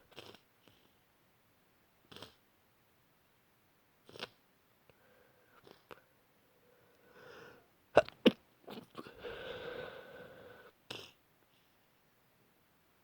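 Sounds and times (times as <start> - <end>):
short breaths: 4.9 - 5.6, 6.6 - 7.7, 9.0 - 10.8
drawn-out voiced breath: 5.0 - 5.6, 6.6 - 7.7, 9.0 - 10.8.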